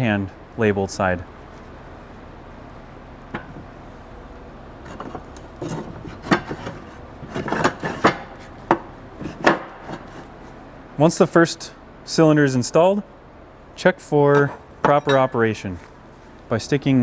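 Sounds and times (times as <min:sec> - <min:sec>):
metal clinks knocks and scrapes: 0:04.8 - 0:10.3, 0:14.3 - 0:16.0.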